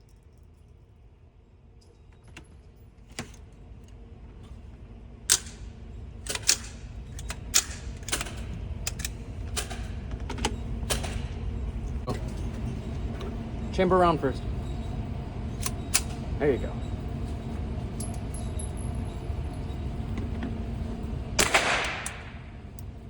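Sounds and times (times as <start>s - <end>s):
suppressed gunshot cracks: 21.4s - 22.2s.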